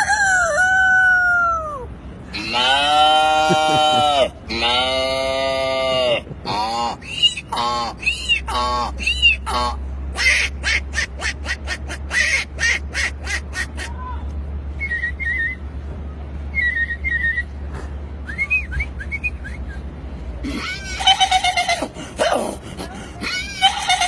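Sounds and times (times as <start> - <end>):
gliding whistles: 14.8 - 15.7, 16.5 - 17.6, 18.2 - 19.8
man whistling like a bird: 14.8 - 15.7, 16.5 - 17.6, 18.2 - 19.9
man making breathy bursts: 21.9 - 23.4.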